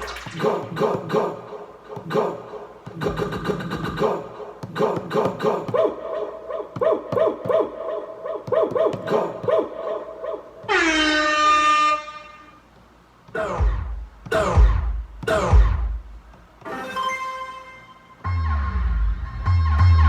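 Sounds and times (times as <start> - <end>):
dj scratch effects: 0.0 - 6.2
air horn effect: 10.7 - 12.6.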